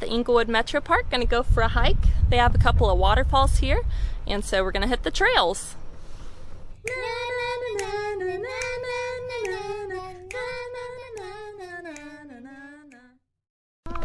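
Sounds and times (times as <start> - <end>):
child singing slow tune: 6.8 - 13.2.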